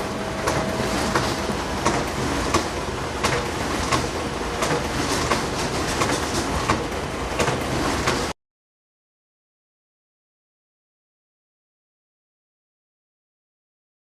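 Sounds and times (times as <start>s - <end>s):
copy machine whirring: 0.0s - 8.4s.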